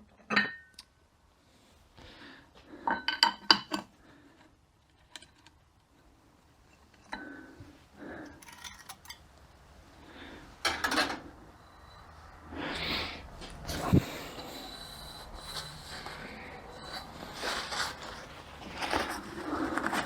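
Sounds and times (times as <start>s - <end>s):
metal parts clinking and clattering: 8.4s - 9.3s.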